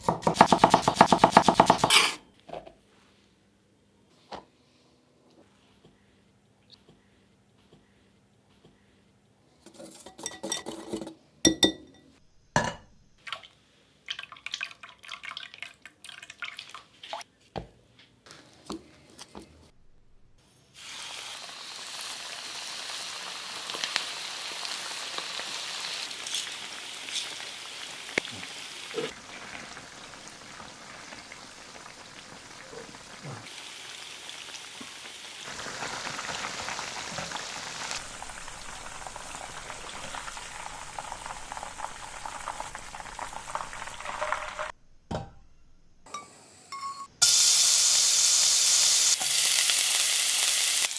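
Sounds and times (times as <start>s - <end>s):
spoon clinking against bowl: 9.7s - 12.2s, 46.1s - 47.2s
chicken frying in hot oil: 20.8s - 44.7s, 47.2s - 50.9s.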